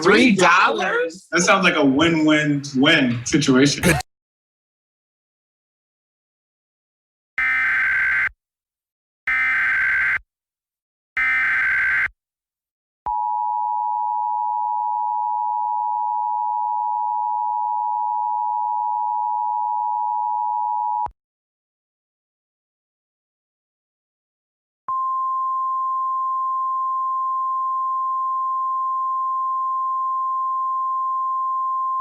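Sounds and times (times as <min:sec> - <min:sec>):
two-tone attention signal: 0:03.8 - 0:04.0.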